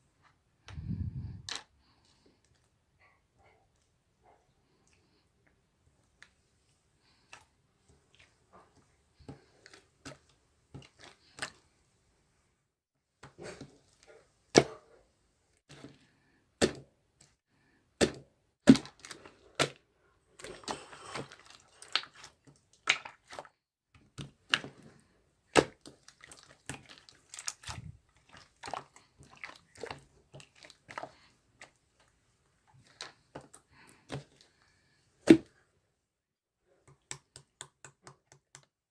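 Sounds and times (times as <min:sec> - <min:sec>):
slime squishing: 0:06.0 - 0:12.0, 0:17.9 - 0:35.6.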